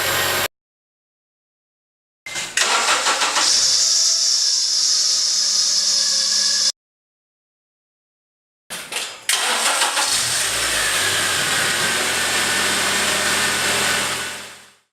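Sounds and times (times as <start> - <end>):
car engine starting and running: 0.0 - 0.5, 2.6 - 4.0, 9.3 - 14.7
loud hiss: 3.4 - 6.7.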